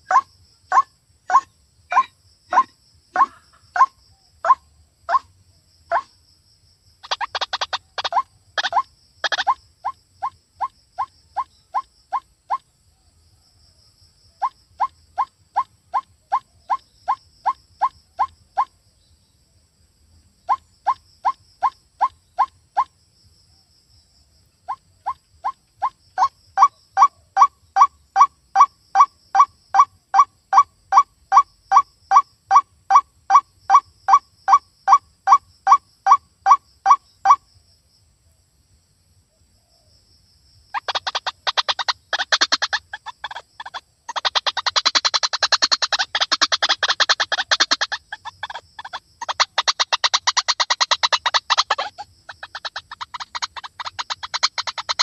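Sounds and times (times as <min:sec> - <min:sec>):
bird chattering: 0:00.0 - 0:05.2, 0:07.0 - 0:12.6, 0:40.8 - 0:55.0
bird calling repeated notes: 0:00.0 - 0:05.3, 0:05.9 - 0:06.1, 0:07.0 - 0:12.6, 0:24.7 - 0:37.4, 0:40.8 - 0:55.0.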